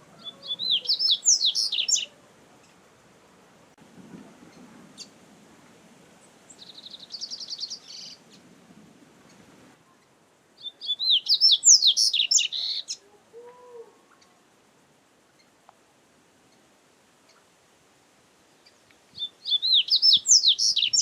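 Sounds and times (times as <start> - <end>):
bird singing: 0.2 - 2.8, 6.5 - 8.4, 9.9 - 13.1, 18.6 - 21.0.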